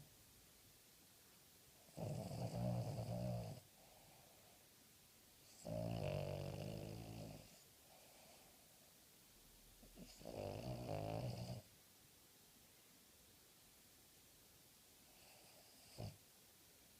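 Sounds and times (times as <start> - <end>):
dog snoring: 1.8 - 4.4, 5.4 - 8.5, 9.8 - 11.7, 15.0 - 16.2.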